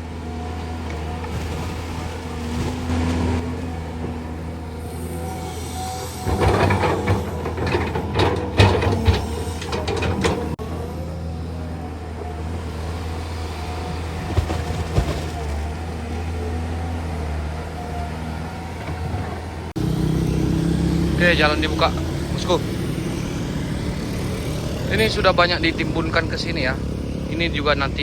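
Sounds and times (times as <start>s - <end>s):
diesel engine running: 0.0s - 28.0s
metallic clanking and knocking: 6.2s - 10.6s.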